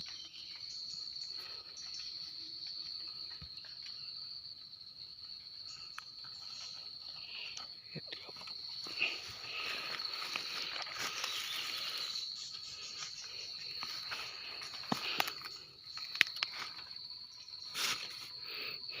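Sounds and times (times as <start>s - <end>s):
insects trilling: 0.0s - 19.0s
crackles and rustles: 5.8s - 12.2s, 12.8s - 17.0s.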